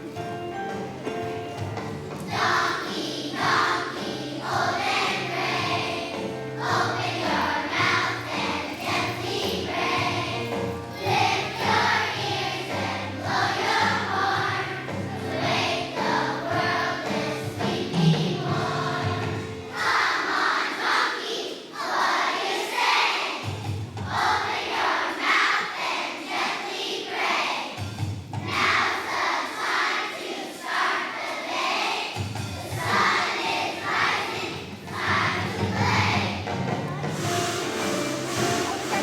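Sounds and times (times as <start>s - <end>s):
instrumental accompaniment: 0.0s - 20.1s, 32.2s - 39.0s
children's choir singing: 0.0s - 39.0s.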